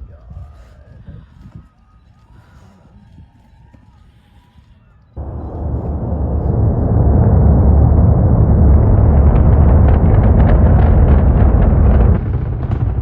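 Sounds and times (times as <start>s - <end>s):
distant rocket launch rumble: 5.2s - 13.0s
rocket crackling: 5.2s - 13.0s.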